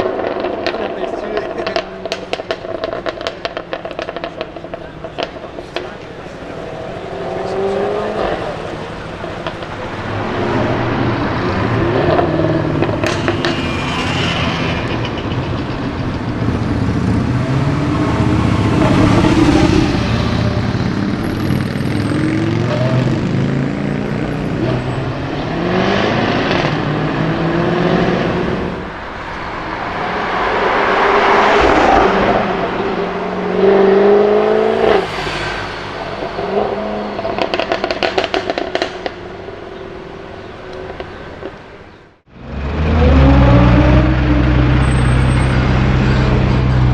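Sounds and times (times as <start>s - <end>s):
exhaust pops crackling: 0.0s - 23.8s
car engine accelerating hard: 0.0s - 46.9s.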